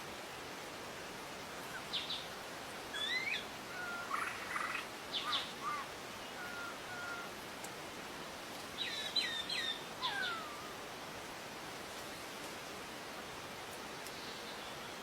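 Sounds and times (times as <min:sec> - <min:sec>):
background hiss: 0:00.0 - 0:15.0
birds chirping and whistling: 0:03.0 - 0:03.4, 0:08.8 - 0:10.6.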